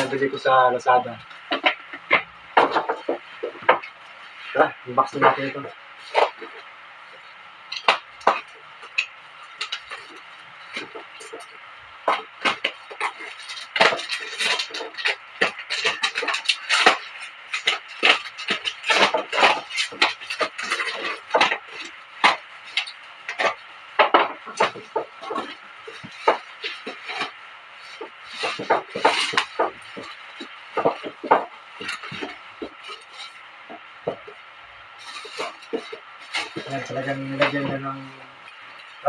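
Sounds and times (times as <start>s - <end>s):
packaging scraping and tearing: 12.2s - 34.4s, 35.0s - 39.0s.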